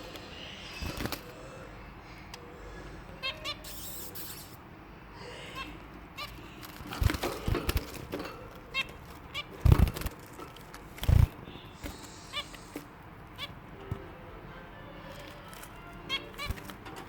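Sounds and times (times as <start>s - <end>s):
finches chirping: 3.0s - 4.6s, 11.1s - 13.6s.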